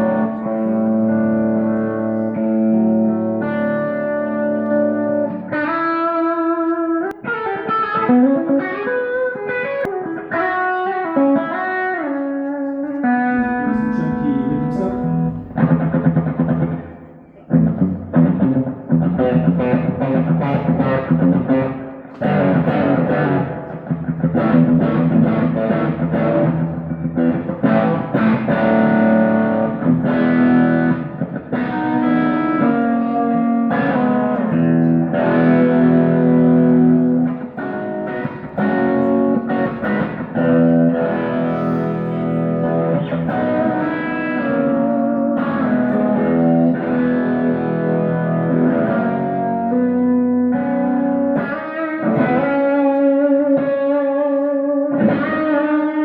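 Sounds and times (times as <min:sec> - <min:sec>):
overdriven electric guitar: 0:00.0 - 0:56.0.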